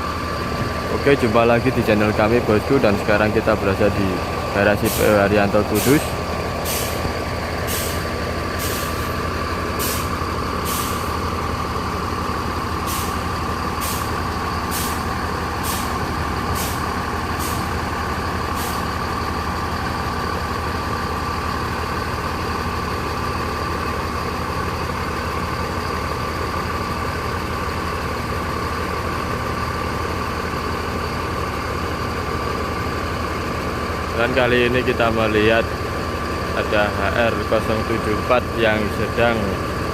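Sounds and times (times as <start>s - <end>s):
bus diesel engine idling: 0.0s - 39.9s
air brake hisses: 5.8s - 7.1s, 7.7s - 9.2s, 9.8s - 11.1s, 12.9s - 13.2s, 14.7s - 15.0s, 15.6s - 16.0s.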